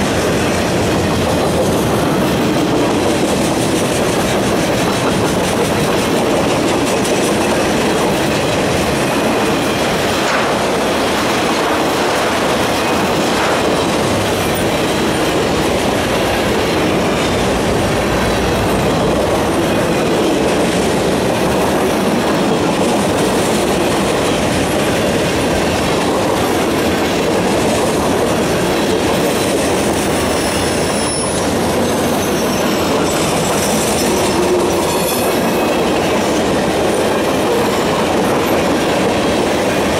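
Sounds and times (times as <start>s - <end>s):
freight cars rumbling on rails: 0.0s - 39.9s
high wheel squeal: 30.1s - 35.8s.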